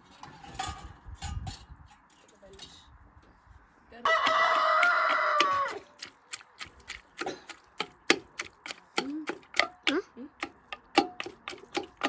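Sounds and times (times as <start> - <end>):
rooster crowing: 4.0 - 5.9.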